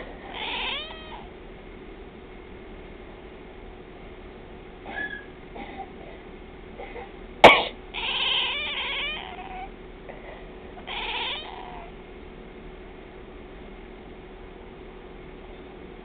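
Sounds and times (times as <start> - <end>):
cat meowing: 0.3 - 1.3, 8.0 - 9.7, 10.8 - 11.9
person coughing: 5.6 - 6.2, 6.8 - 7.8.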